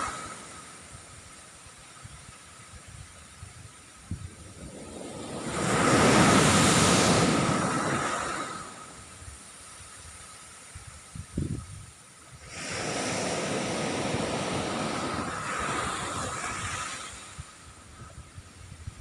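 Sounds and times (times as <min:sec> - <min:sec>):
sea waves washing on beach: 0:00.0 - 0:11.2, 0:11.9 - 0:19.0
wind thumps on microphone: 0:02.8 - 0:08.2.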